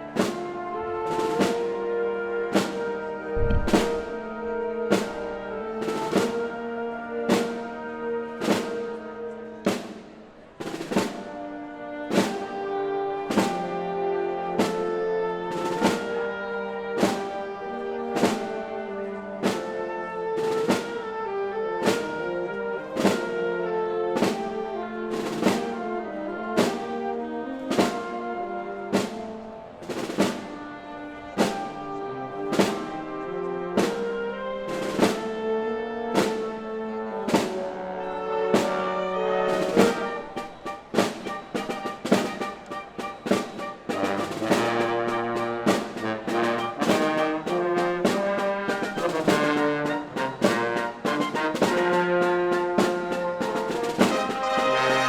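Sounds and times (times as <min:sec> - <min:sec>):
orchestra with brass: 0:00.0 - 0:55.0
heavy drum strokes: 0:03.4 - 0:06.5, 0:39.6 - 0:55.0.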